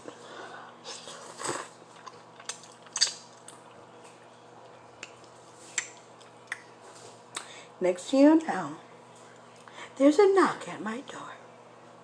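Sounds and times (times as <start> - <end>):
faint steady hum: 0.0 - 12.0
noodles being chewed: 0.8 - 7.5.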